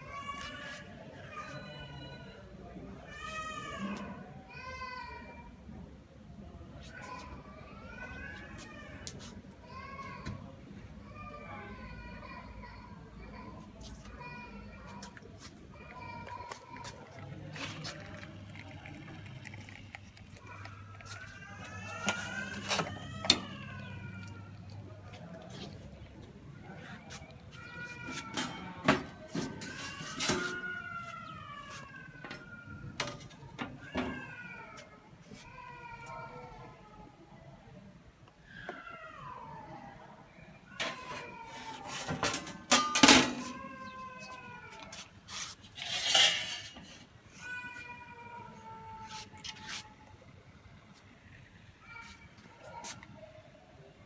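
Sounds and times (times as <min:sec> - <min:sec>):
metal clanks and knocks: 0:42.1 - 0:43.6.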